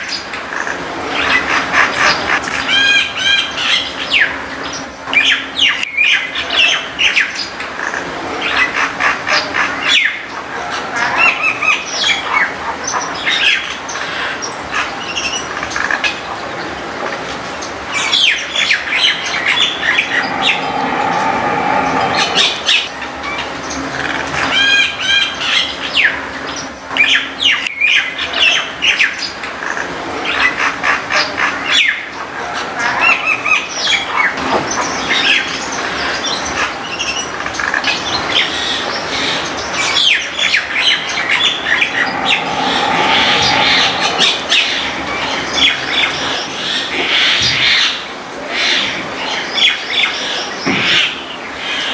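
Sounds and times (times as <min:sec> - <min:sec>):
steady hum: 0:18.6 - 0:23.0, 0:40.6 - 0:45.9.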